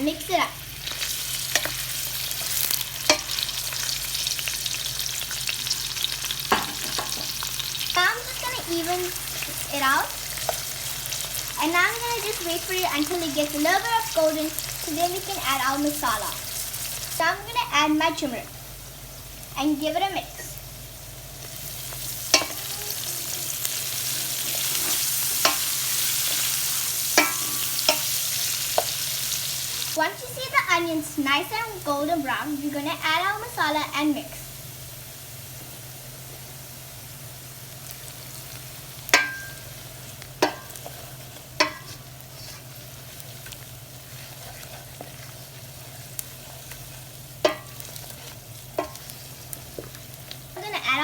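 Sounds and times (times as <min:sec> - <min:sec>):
onions sizzling in oil: 0:00.0 - 0:51.0
spoon knocking against pan: 0:22.3 - 0:22.6, 0:27.2 - 0:28.1, 0:39.1 - 0:39.6, 0:40.4 - 0:40.8, 0:41.6 - 0:42.0, 0:47.4 - 0:47.8
utensil clinking against pan: 0:27.2 - 0:28.1.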